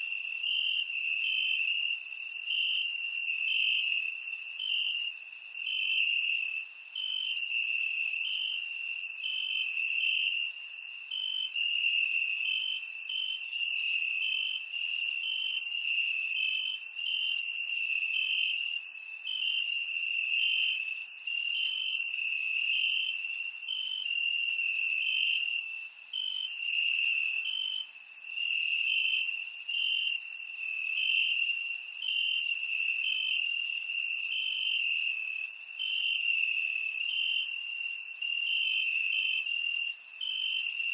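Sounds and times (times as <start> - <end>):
rapid cricket chirps: 0.0 - 40.9
crickets trilling: 0.1 - 40.9.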